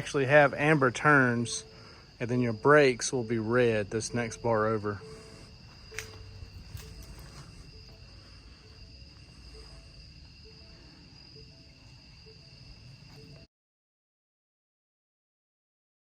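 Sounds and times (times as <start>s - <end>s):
crickets chirring: 0.0s - 13.5s.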